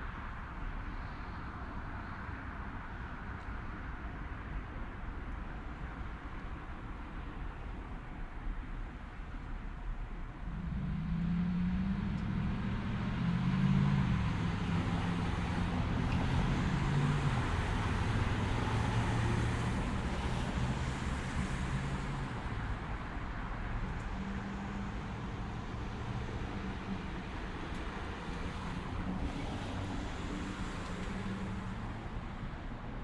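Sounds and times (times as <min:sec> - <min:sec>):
steady road noise: 0:00.0 - 0:33.0
vehicle passing by: 0:10.5 - 0:22.5.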